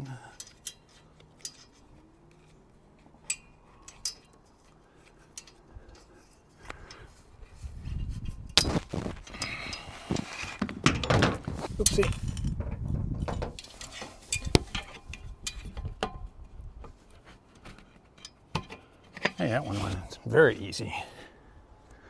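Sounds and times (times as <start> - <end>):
metal hardware clinking: 0.3 - 2.0, 3.2 - 4.4, 5.3 - 5.6
handling clatter and knocks: 8.5 - 9.4, 10.1 - 20.2.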